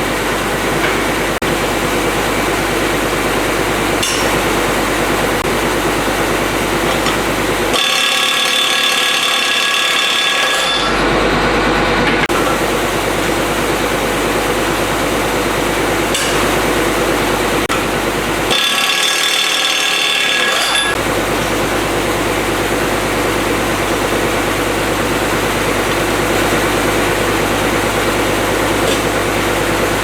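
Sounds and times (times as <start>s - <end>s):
pneumatic impact wrench hammering: 6.9s - 11.0s, 18.5s - 21.0s.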